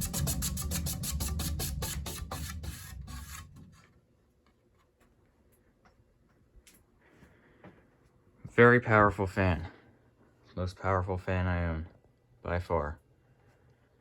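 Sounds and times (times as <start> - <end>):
ceiling fan rhythmic beat: 0.0 - 2.4.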